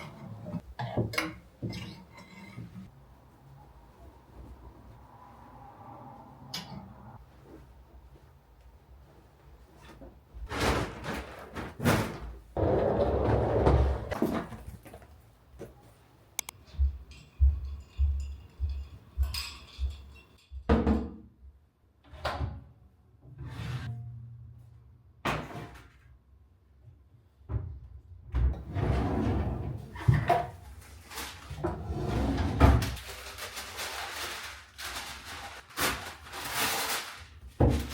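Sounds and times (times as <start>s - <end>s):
rustling: 30.5s - 37.9s.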